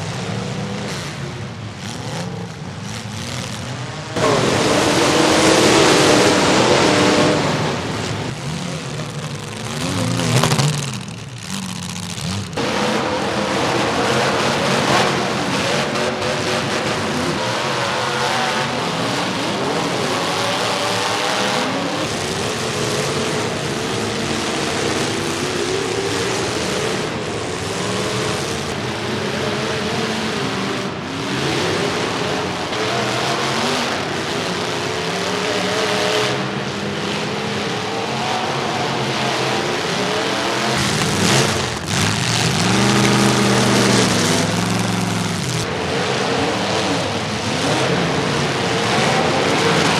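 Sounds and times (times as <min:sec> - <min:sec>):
car engines revving hard: 0:00.0 - 0:49.9.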